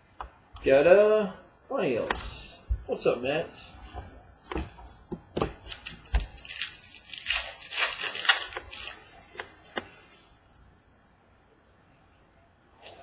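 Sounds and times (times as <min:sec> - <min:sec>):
pack wrapper crinkling: 0:05.7 - 0:09.2.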